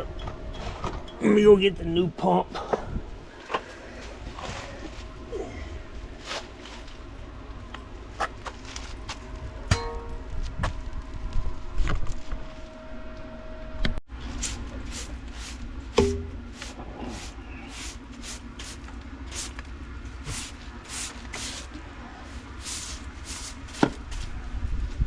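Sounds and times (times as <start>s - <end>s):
footsteps crunching on rough ground: 8.2s - 9.5s, 20.2s - 24.4s
sharp knock: 16.0s - 16.4s.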